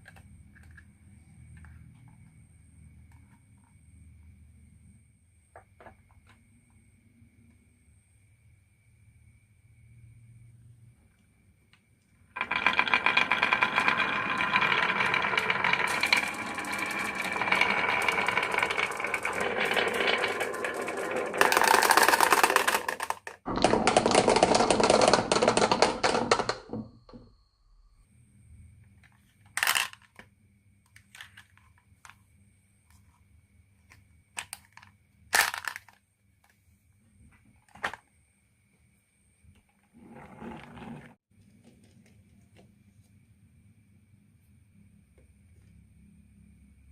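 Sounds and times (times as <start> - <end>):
marbles rattling down wooden run: 12.4 - 26.9, 29.6 - 30.1, 35.4 - 36.0.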